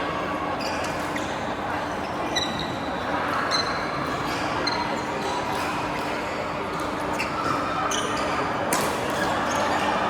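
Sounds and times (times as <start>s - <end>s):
background hubbub: 0.0s - 10.0s
shoe squeaks on court floor: 7.1s - 8.4s.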